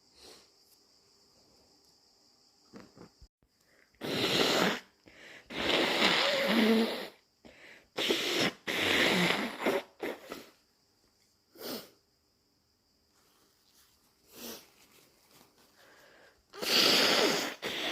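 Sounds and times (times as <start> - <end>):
person sneezing: 4.0 - 4.9, 16.6 - 17.9
person breathing: 5.0 - 5.5, 7.4 - 8.0, 15.6 - 17.9.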